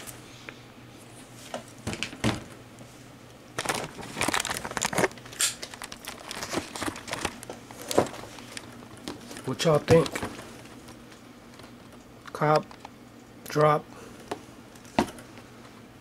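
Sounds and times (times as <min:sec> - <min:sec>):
packing paper crinkling: 0:03.6 - 0:12.8.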